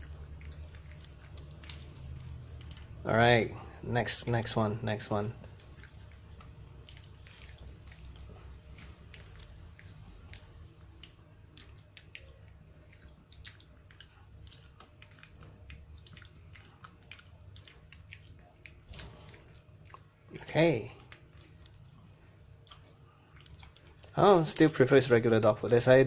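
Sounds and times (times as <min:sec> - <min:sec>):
dog chewing food: 0:00.0 - 0:24.8.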